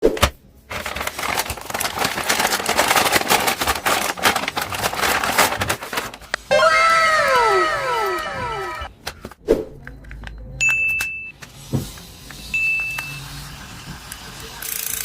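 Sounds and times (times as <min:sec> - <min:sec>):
plastic packaging crinkling: 0:00.7 - 0:06.4
falling electronic tones: 0:06.5 - 0:08.9.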